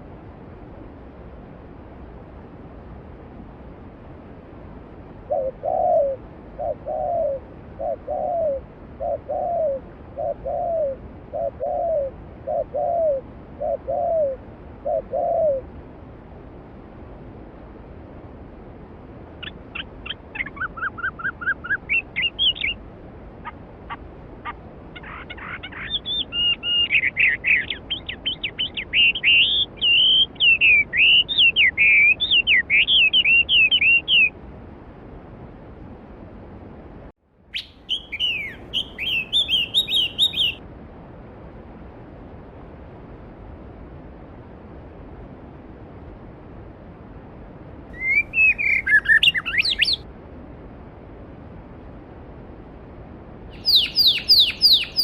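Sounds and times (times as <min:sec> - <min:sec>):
bird hooting calls: 0:05.3 - 0:15.7, 0:23.4 - 0:34.3, 0:37.5 - 0:40.6, 0:47.9 - 0:50.0, 0:53.6 - 0:55.0
songbird twittering: 0:19.4 - 0:22.8, 0:23.4 - 0:34.3, 0:37.5 - 0:40.6, 0:47.9 - 0:50.0, 0:53.6 - 0:55.0.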